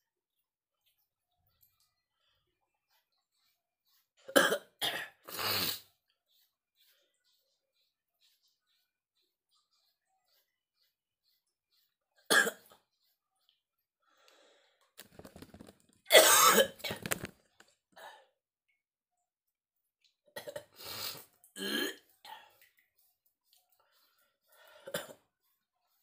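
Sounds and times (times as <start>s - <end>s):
man coughing: 16.1s - 16.8s.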